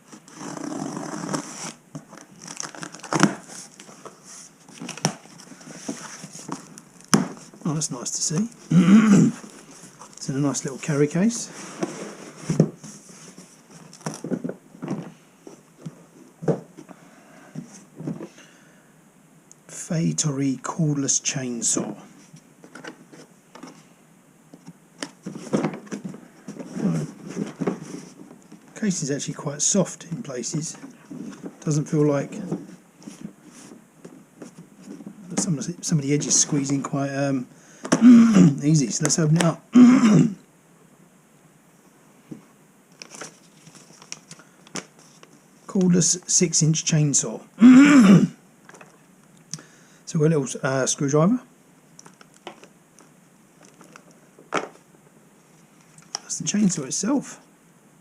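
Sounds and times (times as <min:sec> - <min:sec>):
packaging crinkling and rustling: 0:00.1 - 0:07.7, 0:09.4 - 0:15.2, 0:24.6 - 0:28.8, 0:42.9 - 0:45.5, 0:52.0 - 0:54.9.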